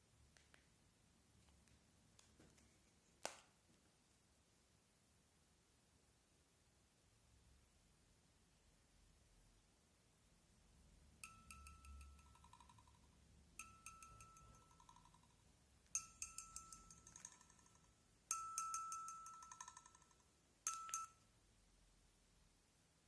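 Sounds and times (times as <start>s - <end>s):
bright clinking ringing taps: 11.2s - 13.0s, 13.6s - 15.3s, 15.9s - 21.2s.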